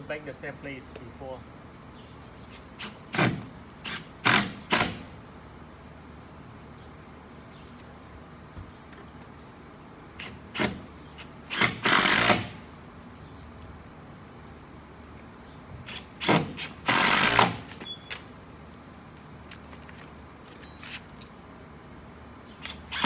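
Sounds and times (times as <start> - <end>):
power drill driving screws: 2.8 - 5.0, 10.2 - 12.6, 15.9 - 17.8, 22.6 - 23.0.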